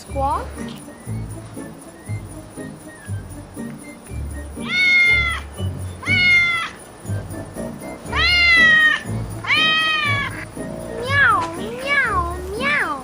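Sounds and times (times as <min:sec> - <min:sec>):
background music with a beat: 0:00.0 - 0:11.7
cat meowing: 0:04.6 - 0:06.8, 0:08.1 - 0:13.0.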